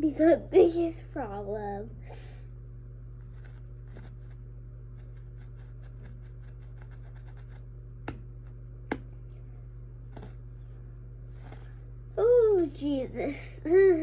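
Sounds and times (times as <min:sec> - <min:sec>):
steady low hum: 0:00.0 - 0:14.0
toothbrush scrubbing carpet: 0:03.3 - 0:07.7.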